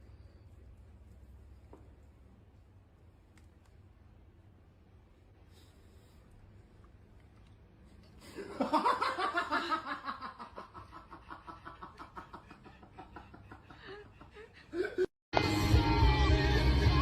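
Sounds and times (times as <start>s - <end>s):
person laughing: 8.2s - 15.1s.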